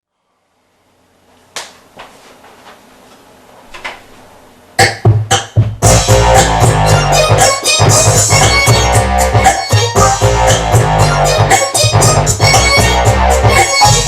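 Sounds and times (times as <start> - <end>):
electronic beat with drums and synth: 4.8 - 14.0.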